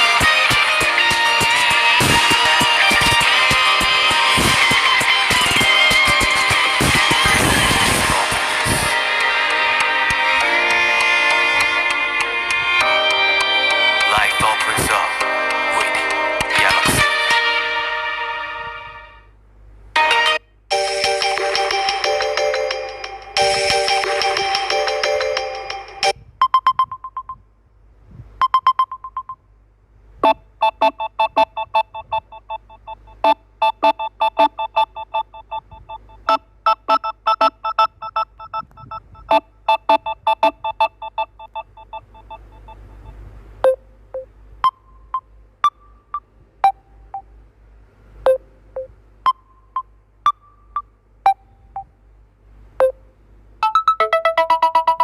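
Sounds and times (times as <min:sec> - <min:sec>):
electronic ringtone chimes: 0:53.6 - 0:55.0.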